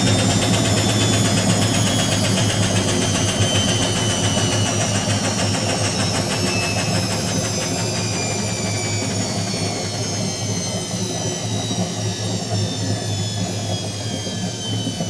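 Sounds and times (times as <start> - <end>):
washing machine spinning: 0.0 - 15.0.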